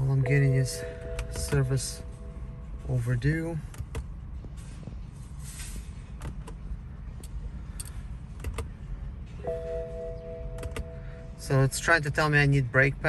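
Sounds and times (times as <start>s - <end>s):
electronic warning tone: 0.0s - 3.1s
low steady hum: 0.0s - 13.0s
control clicks and taps: 10.6s - 10.9s.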